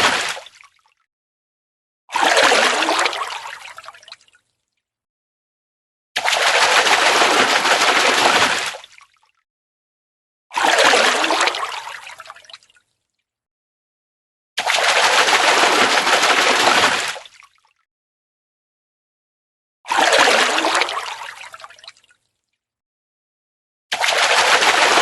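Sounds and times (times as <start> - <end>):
fish splashing in water: 0.0 - 0.9, 6.2 - 9.1, 14.6 - 17.6, 23.9 - 25.0.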